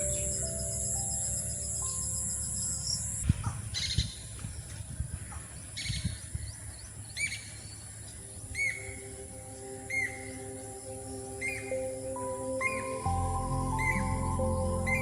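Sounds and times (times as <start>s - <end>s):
high insect whine: 0.0s - 3.3s, 8.2s - 15.0s
bird chirping: 0.0s - 15.0s.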